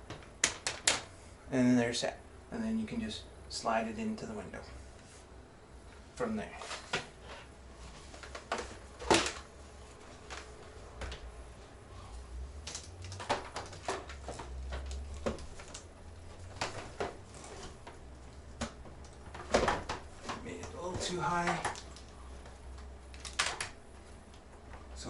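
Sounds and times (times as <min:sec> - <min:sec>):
plastic fan clunking and knocking: 0:08.1 - 0:09.5, 0:13.0 - 0:21.9.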